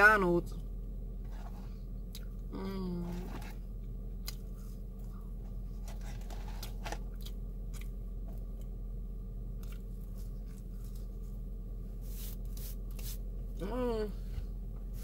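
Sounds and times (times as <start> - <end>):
steady low hum: 0.0 - 15.0
person chewing food: 3.8 - 8.8, 9.5 - 11.4.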